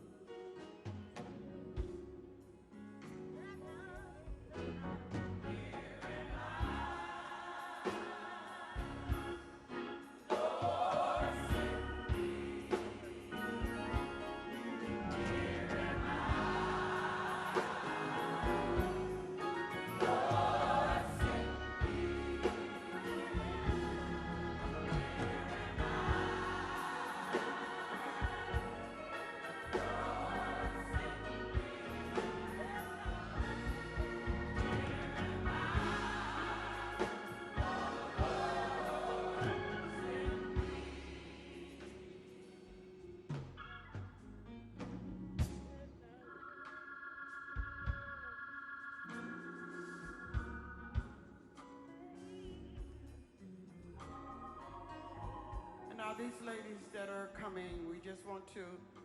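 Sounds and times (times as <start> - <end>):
choir singing gospel music: 0.0 - 3.2, 3.9 - 43.4, 44.2 - 59.0
sustained chords: 46.0 - 51.8.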